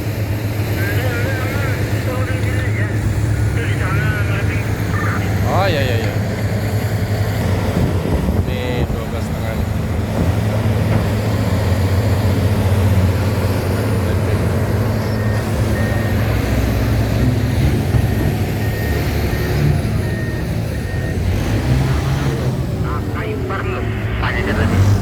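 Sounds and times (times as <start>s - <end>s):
heavy diesel engine under load: 0.0s - 25.0s
reversing alarm beeping: 11.6s - 25.0s.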